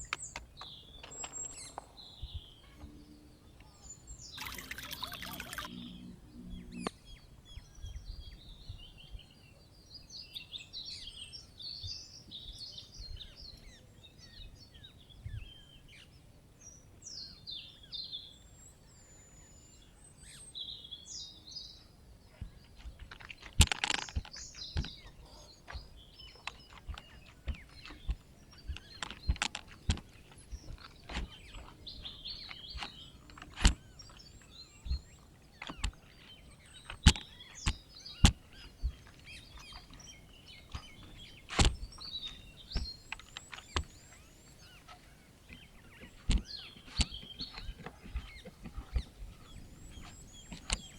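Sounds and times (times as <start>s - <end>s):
small birds chirping: 0.0s - 50.9s
sharp clicks and knocks: 22.8s - 25.1s, 25.7s - 34.2s, 36.8s - 40.0s, 45.5s - 49.2s.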